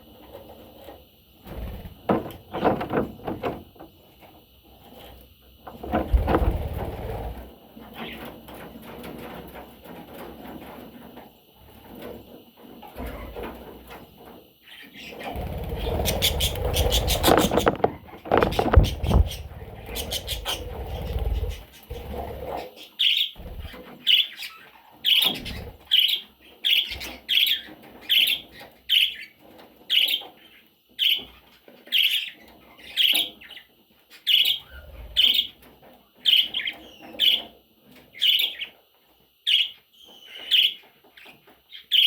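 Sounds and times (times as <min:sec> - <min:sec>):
bird chicks chirping: 0:14.6 - 0:38.8, 0:39.5 - 0:42.0
low rumbling noise: 0:18.3 - 0:22.5.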